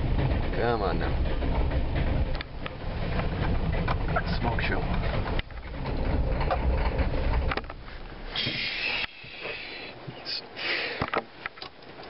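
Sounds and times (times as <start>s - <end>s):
diesel engine running rough: 0.0s - 9.8s
short hissing: 8.3s - 11.0s.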